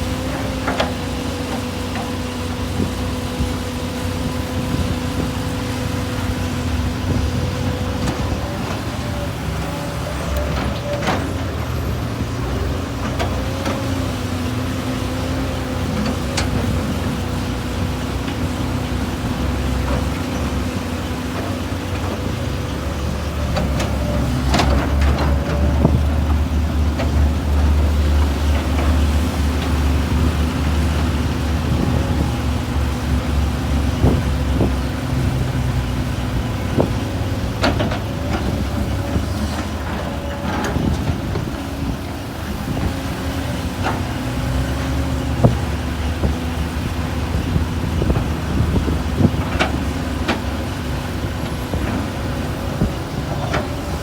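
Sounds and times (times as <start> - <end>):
excavator engine and hydraulics: 0.0 - 54.0.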